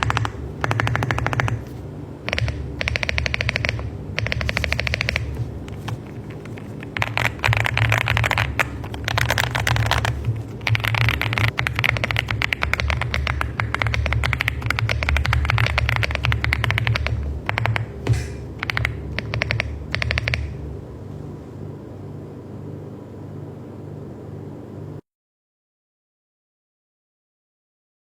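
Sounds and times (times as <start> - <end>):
mechanical keyboard typing: 0.0 - 20.6
steady low hum: 0.0 - 25.0.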